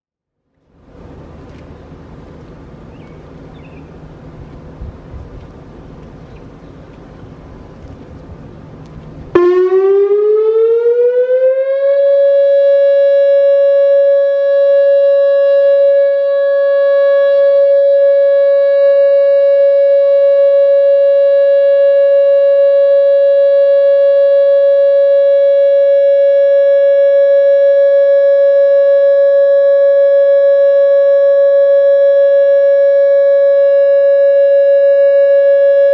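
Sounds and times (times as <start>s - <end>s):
electronic warning siren: 9.3s - 35.9s.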